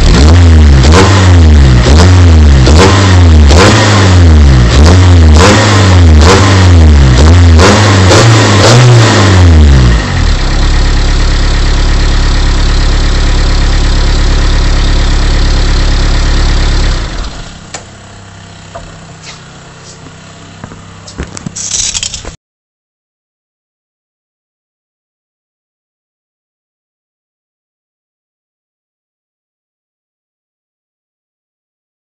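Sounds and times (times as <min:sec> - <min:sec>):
engine revving: 0:00.0 - 0:17.6.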